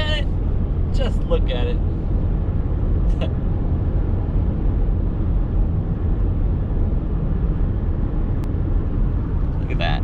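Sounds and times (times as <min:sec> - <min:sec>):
car cabin road rumble: 0:00.0 - 0:10.0.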